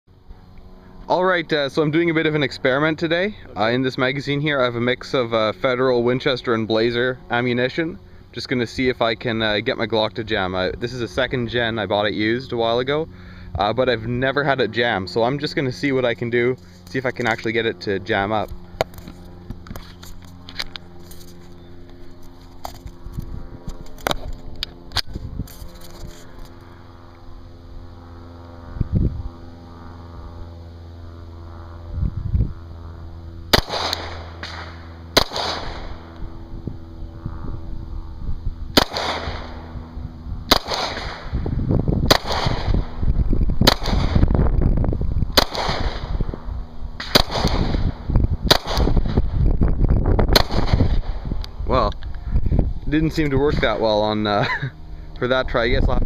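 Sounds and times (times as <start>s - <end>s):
pistol shots: 33.5s - 36.0s, 38.8s - 39.6s, 40.5s - 41.4s, 42.1s - 42.8s, 43.6s - 44.2s, 45.4s - 46.1s, 47.0s - 47.9s, 48.5s - 49.1s, 50.3s - 51.2s.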